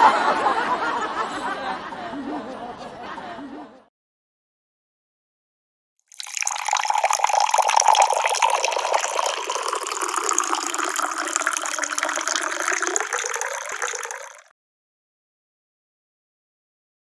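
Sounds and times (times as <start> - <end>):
running water splashing: 6.1 - 14.5.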